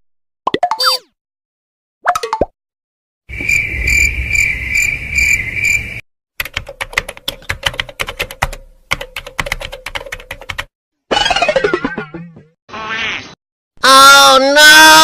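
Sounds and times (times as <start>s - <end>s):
high pulsing chirping: 3.3s - 6.0s
computer keyboard typing: 6.4s - 10.7s.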